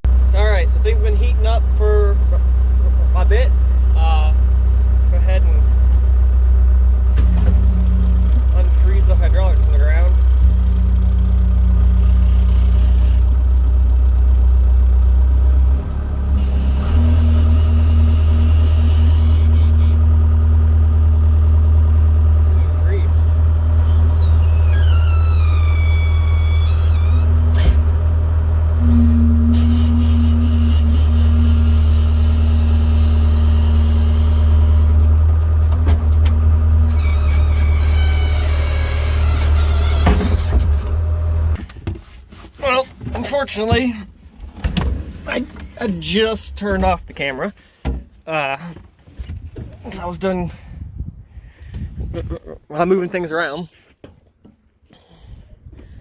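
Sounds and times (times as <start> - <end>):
skid steer engine running: 0.0 - 41.9
high whine: 28.6 - 35.0.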